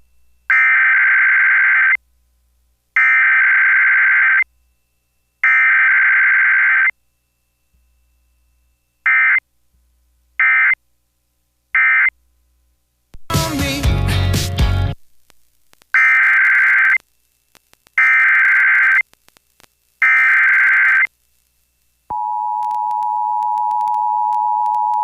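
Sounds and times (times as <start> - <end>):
buzzy digital data bursts: 15.9 - 21.8.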